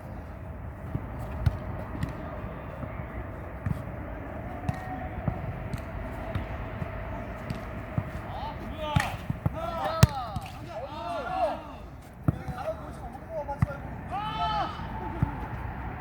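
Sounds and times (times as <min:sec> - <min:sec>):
ball bouncing and being kicked: 0:00.8 - 0:02.4, 0:04.6 - 0:08.3, 0:08.9 - 0:10.6, 0:12.2 - 0:12.7.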